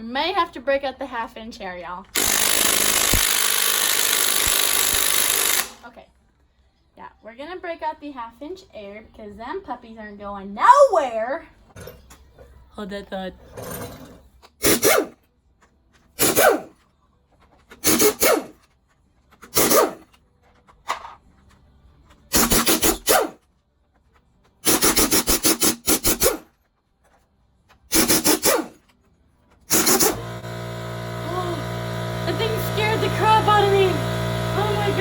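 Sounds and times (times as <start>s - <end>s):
pneumatic impact wrench hammering: 2.2s - 5.8s, 14.6s - 15.2s, 16.2s - 16.8s, 17.8s - 18.6s, 19.4s - 20.1s, 22.3s - 23.4s, 24.6s - 26.5s, 27.9s - 28.9s, 29.7s - 35.0s.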